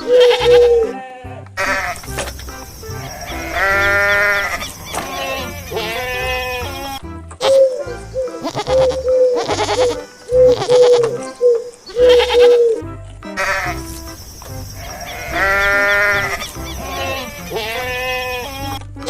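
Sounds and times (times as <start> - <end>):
background music with beat: 0.0 - 3.7, 4.9 - 14.7
goat bleating: 0.0 - 11.2, 12.0 - 18.9.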